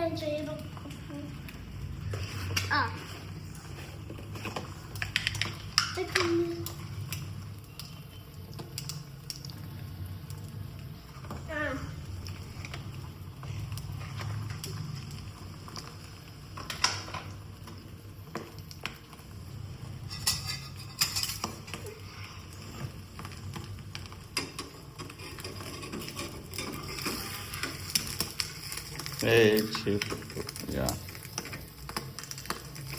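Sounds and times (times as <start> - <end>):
utensils clinking on cookware: 20.0 - 21.9.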